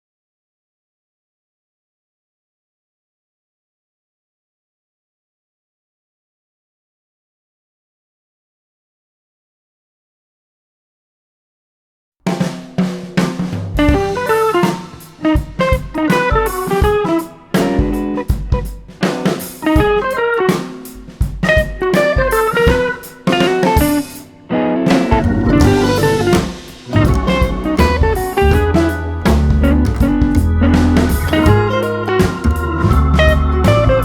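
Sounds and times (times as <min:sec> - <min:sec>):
drum kit playing a steady beat: 0:12.3 - 0:24.3, 0:24.9 - 0:34.0
guitar: 0:13.6 - 0:34.0.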